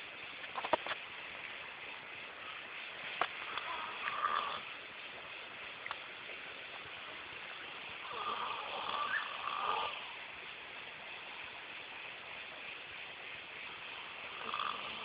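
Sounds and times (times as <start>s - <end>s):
steady hiss: 0.0s - 15.0s
man snoring: 8.1s - 10.0s, 14.3s - 15.0s.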